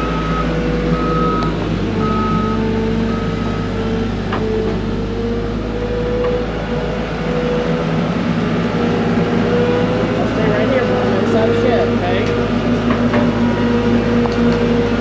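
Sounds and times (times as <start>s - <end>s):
reversing alarm beeping: 0.0s - 3.8s
skid steer engine running: 0.0s - 15.0s.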